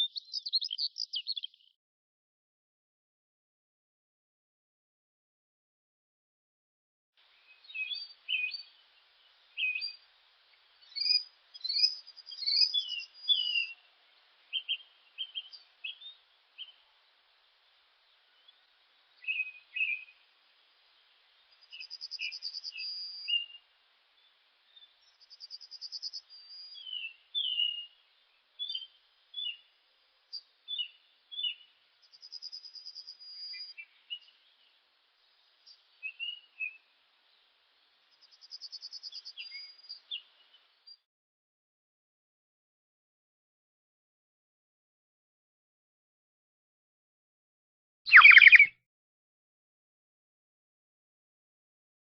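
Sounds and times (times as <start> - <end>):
songbirds chirping and singing: 0.0 - 1.7, 7.4 - 8.9, 10.8 - 16.8, 18.3 - 20.2, 24.3 - 28.0, 35.4 - 36.8, 38.2 - 40.7, 48.1 - 48.7
fast buzzy bird trill: 48.1 - 48.7.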